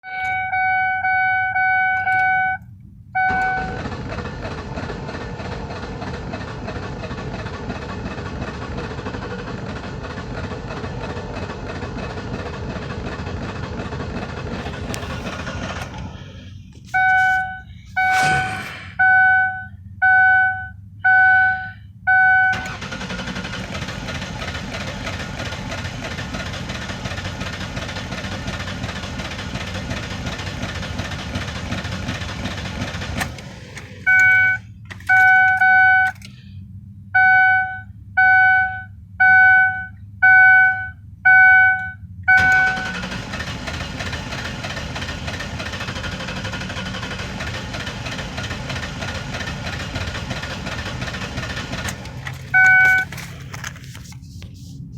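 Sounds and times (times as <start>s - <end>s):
car warning chime beeping: 0.0s - 3.8s, 16.9s - 18.4s, 19.0s - 22.8s, 34.0s - 36.3s, 37.2s - 43.1s, 52.4s - 53.1s
steady mechanical car noise: 0.0s - 54.9s.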